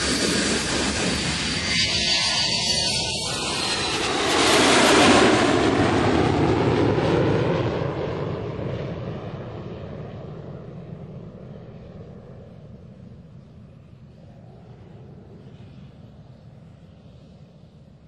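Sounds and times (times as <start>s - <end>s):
aircraft engine taking off: 0.0s - 18.0s.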